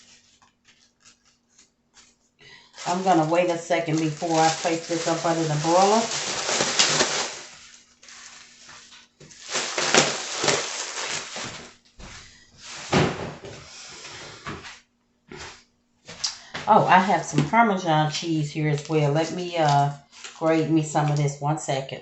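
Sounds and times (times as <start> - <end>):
kitchen knocks and clatters: 12.9 - 13.7.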